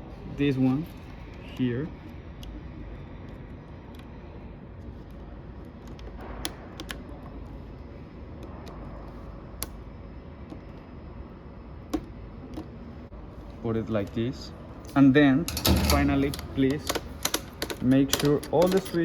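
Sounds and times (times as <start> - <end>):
plastic switch parts clicking: 15.5 - 19.0.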